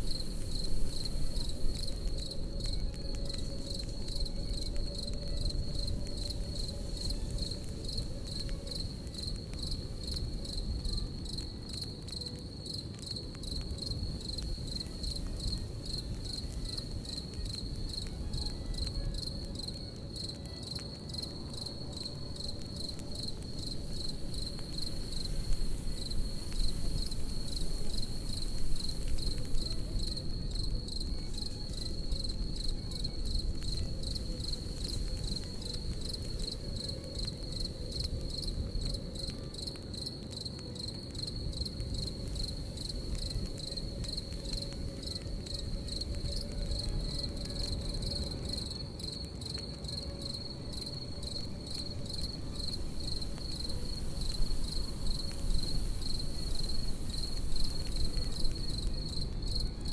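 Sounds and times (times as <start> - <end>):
crackling campfire: 0.0 - 59.9
crickets chirping: 0.0 - 59.9
low rumble of fire: 0.0 - 59.9.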